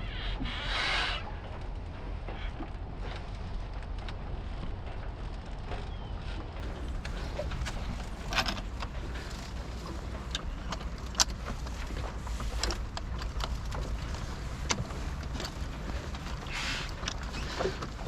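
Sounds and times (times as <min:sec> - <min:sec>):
wind buffeting microphone: 0:01.6 - 0:18.0.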